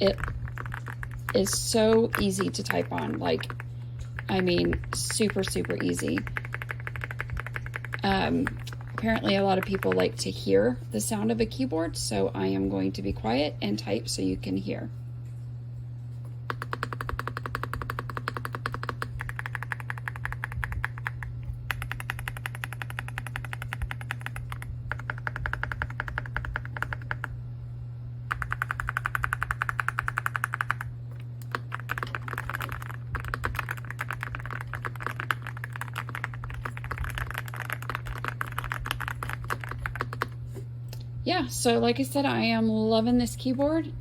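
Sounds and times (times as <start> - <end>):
mechanical keyboard typing: 0.0 - 10.3, 16.5 - 27.3, 28.3 - 40.4
steady low hum: 0.0 - 44.0.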